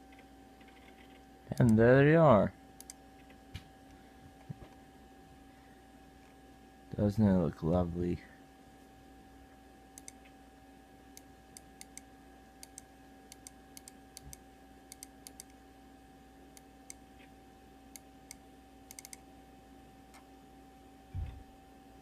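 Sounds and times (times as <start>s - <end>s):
steady electrical hum: 0.0s - 22.0s
computer mouse clicking: 2.8s - 3.4s, 10.0s - 10.3s, 11.1s - 15.6s, 17.9s - 19.2s.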